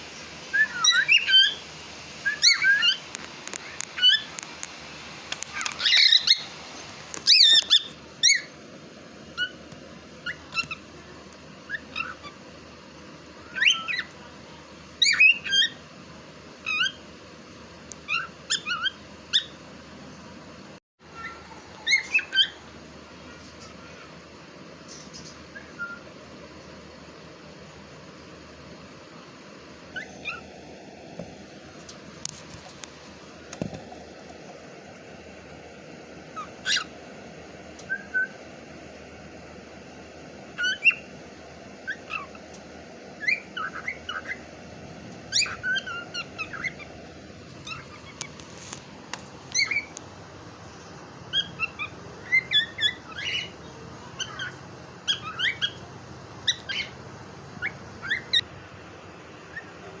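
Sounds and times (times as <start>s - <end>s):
steady background hiss: 0.0s - 60.0s
cockatiel chirping and whistling: 0.5s - 1.6s, 2.2s - 3.0s, 4.0s - 4.3s, 5.5s - 6.5s, 7.2s - 8.6s, 9.4s - 9.6s, 10.2s - 10.8s, 11.7s - 12.4s, 13.5s - 14.1s, 15.0s - 15.8s, 16.6s - 17.0s, 18.1s - 19.6s, 21.2s - 22.6s, 24.9s - 26.1s, 29.9s - 30.4s, 36.4s - 36.9s, 37.8s - 38.4s, 40.6s - 41.1s, 41.8s - 42.4s, 43.2s - 44.4s, 45.3s - 46.9s, 47.6s - 48.4s, 49.5s - 50.0s, 51.3s - 53.6s, 54.2s - 55.8s, 56.4s - 57.0s, 57.6s - 58.4s.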